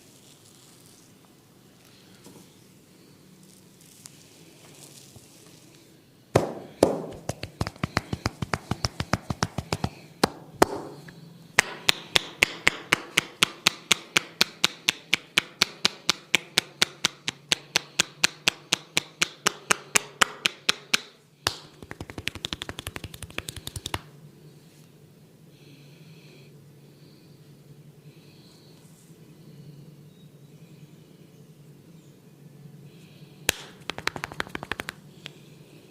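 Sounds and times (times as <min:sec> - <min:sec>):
percussive head massage tapping: 0:06.4 - 0:11.0, 0:11.6 - 0:24.1, 0:33.5 - 0:35.0.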